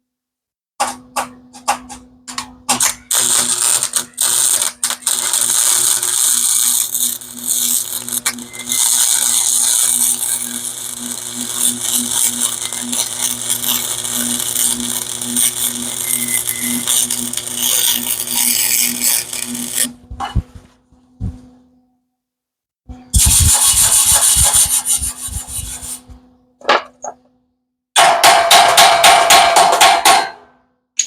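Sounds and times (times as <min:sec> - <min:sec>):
low welder hum: 0:00.8 - 0:21.8, 0:22.9 - 0:26.4
welding arc crackling: 0:02.7 - 0:20.0, 0:23.2 - 0:25.9.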